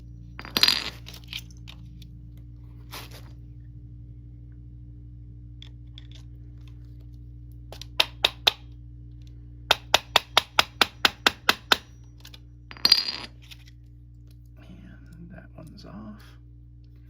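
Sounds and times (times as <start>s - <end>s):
hammer striking metal: 9.7s - 12.0s.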